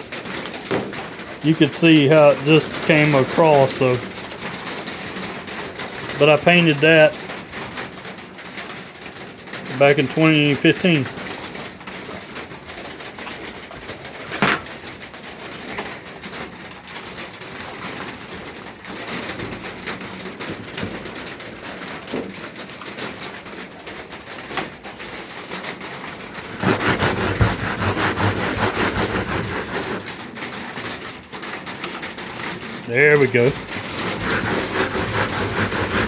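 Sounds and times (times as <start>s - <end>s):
sandpaper scuffing metal: 26.4s - 30.1s, 33.4s - 36.0s
fast back-and-forth sanding strokes: 26.4s - 30.2s, 33.4s - 36.0s.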